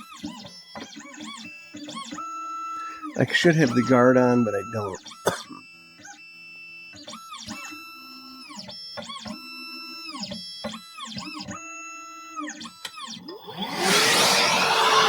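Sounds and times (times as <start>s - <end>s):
stepper motors whining: 13.2s - 15.0s.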